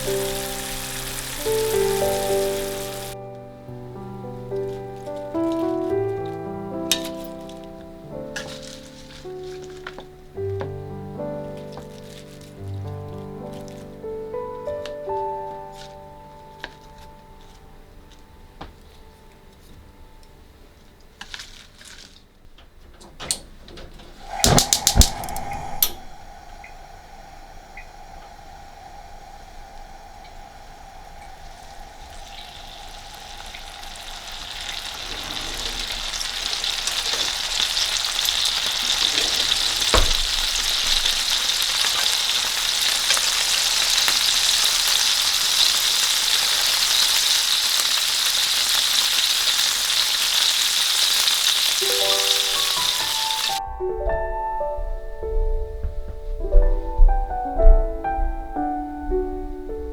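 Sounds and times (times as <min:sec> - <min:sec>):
food sizzling in a pan: 0:00.0 - 0:18.1, 0:24.2 - 0:53.6.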